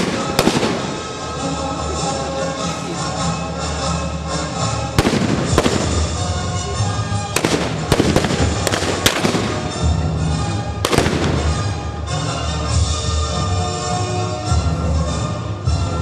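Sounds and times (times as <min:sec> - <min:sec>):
gunshots: 0:00.0 - 0:01.2, 0:05.0 - 0:06.2, 0:07.4 - 0:10.0, 0:10.8 - 0:11.8
orchestral music: 0:00.0 - 0:16.0.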